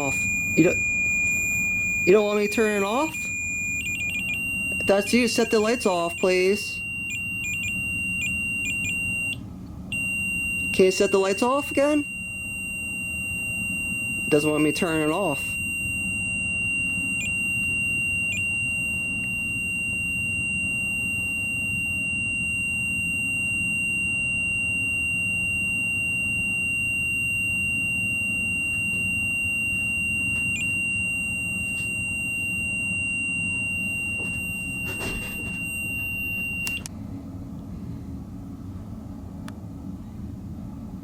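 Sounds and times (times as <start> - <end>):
high-pitched alarm tone: 0.0 - 36.9
low hum: 0.0 - 41.0
clicks: 36.6 - 36.9.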